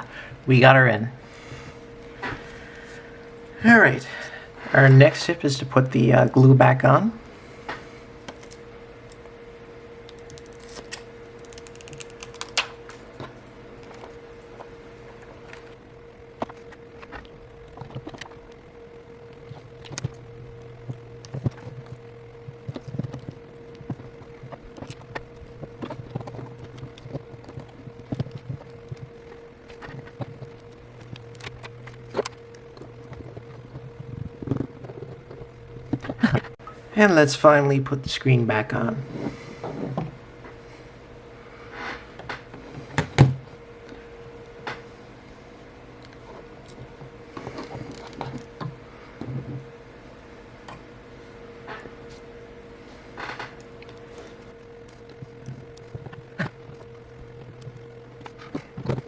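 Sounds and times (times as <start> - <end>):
low electrical hum: 0.0 - 59.0.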